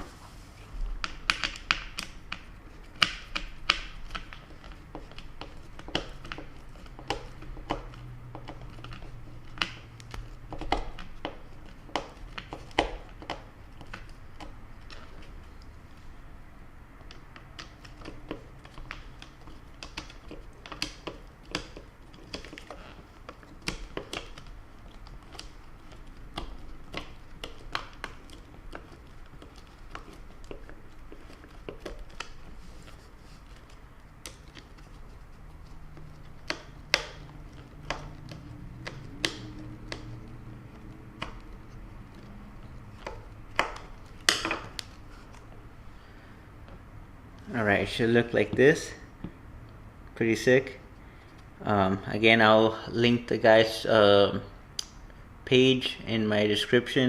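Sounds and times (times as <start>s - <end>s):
small clicks and taps of hand work: 1.0s - 15.8s, 16.9s - 47.5s.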